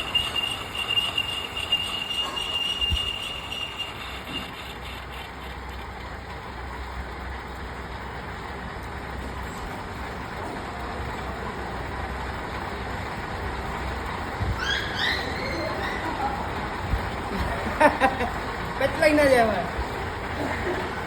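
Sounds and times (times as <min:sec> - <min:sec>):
metal lathe running: 0:00.0 - 0:14.4.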